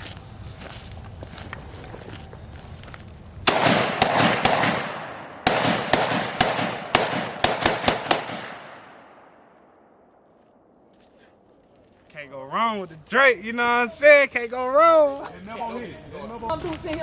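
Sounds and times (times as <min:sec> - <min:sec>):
pistol shots echoing: 0:03.4 - 0:10.0.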